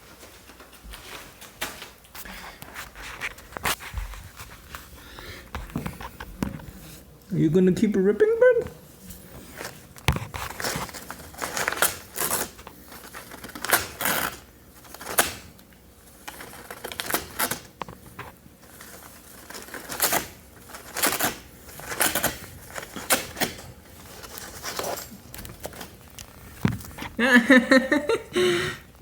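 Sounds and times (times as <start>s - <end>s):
rabbit tearing packaging: 9.3s - 27.1s.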